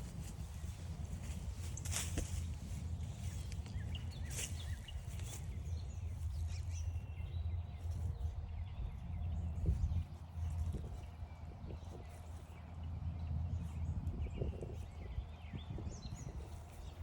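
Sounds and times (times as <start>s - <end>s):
crunching footsteps: 0.0s - 6.4s.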